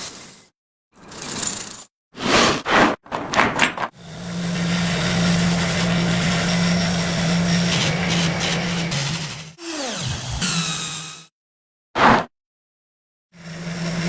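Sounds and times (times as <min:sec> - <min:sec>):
power tool motor humming: 0:04.0 - 0:11.3, 0:13.4 - 0:14.0.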